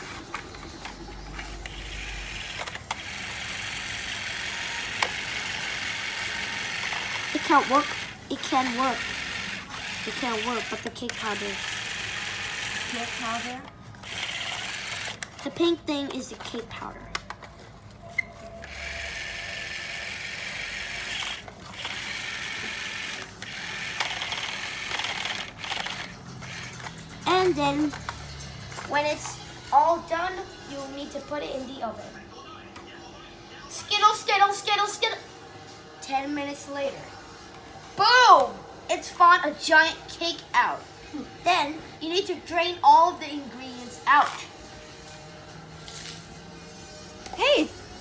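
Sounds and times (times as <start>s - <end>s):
mixing mechanism rattling whir: 0.0s - 17.2s, 18.4s - 31.9s.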